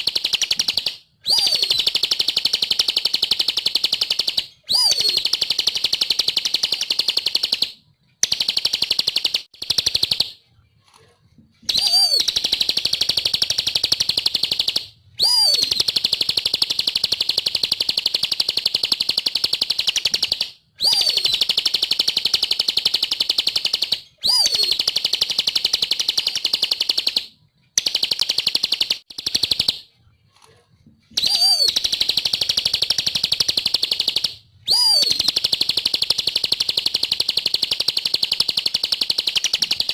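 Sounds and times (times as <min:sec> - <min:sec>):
bird singing fast high trills: 0:01.3 - 0:02.0, 0:04.7 - 0:05.3, 0:11.8 - 0:12.8, 0:13.5 - 0:16.0, 0:20.8 - 0:21.4, 0:31.2 - 0:35.6.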